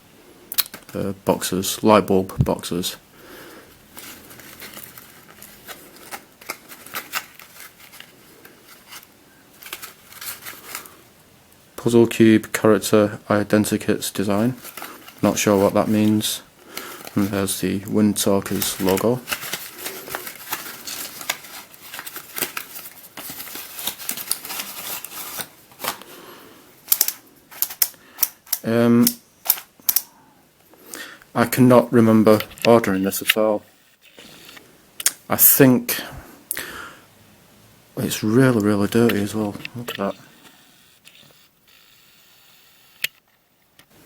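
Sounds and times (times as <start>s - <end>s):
packaging rustling: 3.5s - 11.0s, 14.1s - 28.7s.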